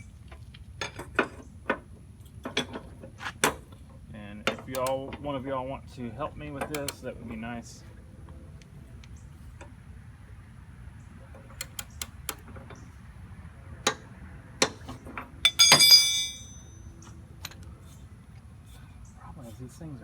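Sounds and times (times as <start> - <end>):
metal tool clicks and taps: 4.5 - 5.0, 6.6 - 7.0, 15.5 - 16.5
ringing metal clink: 15.4 - 16.9.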